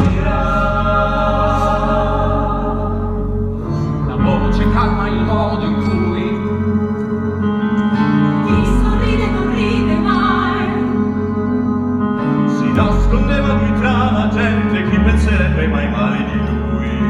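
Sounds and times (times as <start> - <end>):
orchestra playing sustained chords: 0.0 - 17.0.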